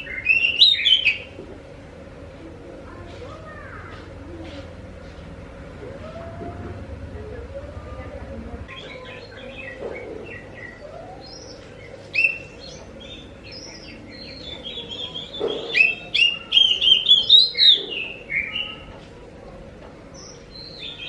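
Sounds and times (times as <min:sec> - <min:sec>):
bird singing whistled notes: 0:00.0 - 0:01.3.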